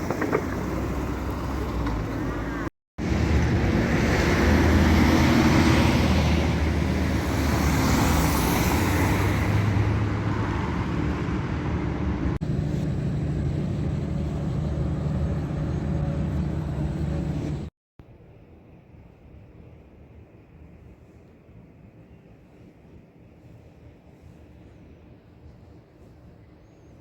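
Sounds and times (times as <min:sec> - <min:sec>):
traffic rumble: 0:00.0 - 0:17.7.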